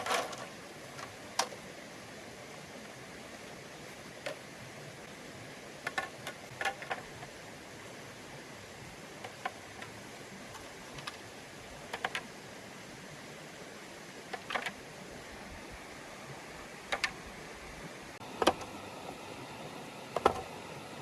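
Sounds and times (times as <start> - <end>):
stream running: 0.0 - 21.0
sharp clicks and knocks: 20.1 - 20.5.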